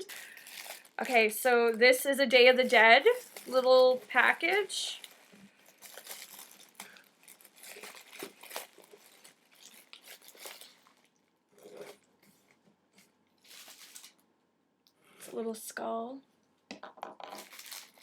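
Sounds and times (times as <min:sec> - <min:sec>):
wrapping crinkling and tearing: 0:00.0 - 0:14.2, 0:17.3 - 0:18.0.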